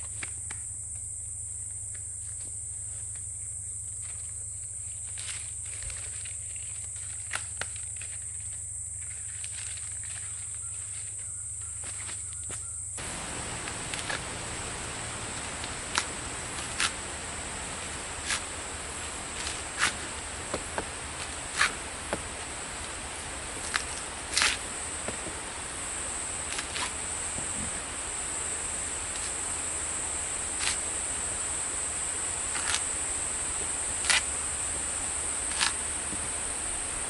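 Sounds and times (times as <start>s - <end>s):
insects droning: 0.0s - 37.0s
coconut being husked: 13.0s - 37.0s
low hum: 13.0s - 37.0s.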